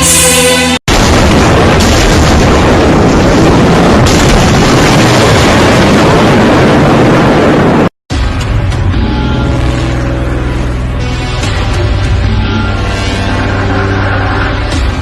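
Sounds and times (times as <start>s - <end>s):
heavy rain: 0.9s - 7.9s
storm wind on microphone: 0.9s - 7.9s.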